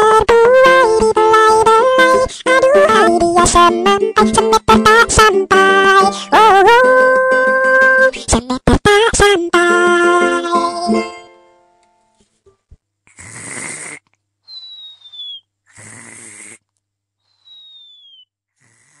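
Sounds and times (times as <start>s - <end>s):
cartoon snoring: 13.1s - 14.1s, 15.7s - 16.6s, 18.6s - 19.0s
falling whistle: 14.5s - 15.5s, 17.3s - 18.3s.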